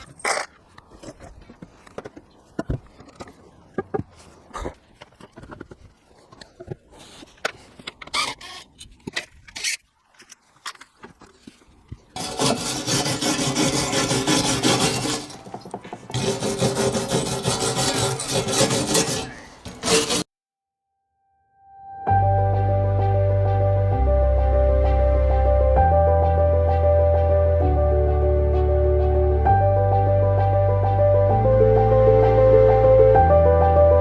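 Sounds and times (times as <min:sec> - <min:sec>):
power tool sanding: 0:12.2 - 0:20.3
handling knocks and clicks: 0:15.3 - 0:16.2.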